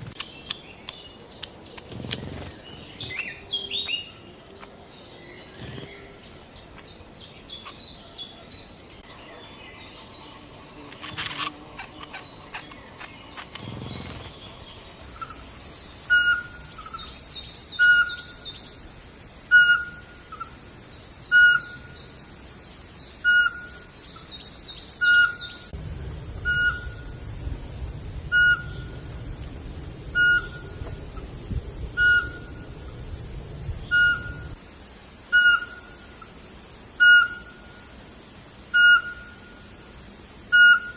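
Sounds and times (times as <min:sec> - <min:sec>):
birds chirping trills: 0:00.0 - 0:18.8
bird whistled note: 0:28.3 - 0:28.9, 0:33.9 - 0:34.5.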